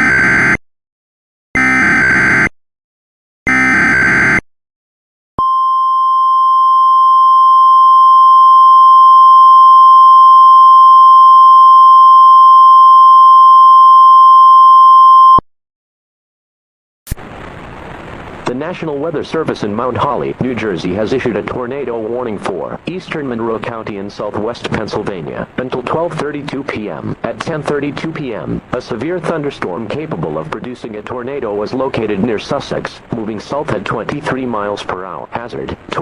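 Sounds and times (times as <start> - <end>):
steady warning alarm tone: 0.0 - 0.6, 1.6 - 2.5, 3.5 - 4.4.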